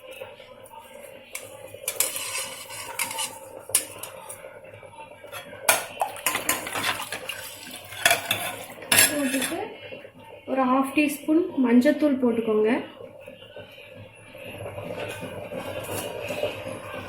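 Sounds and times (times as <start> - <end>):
spoon clinking against cooking pot: 1.4 - 4.4, 5.4 - 9.6.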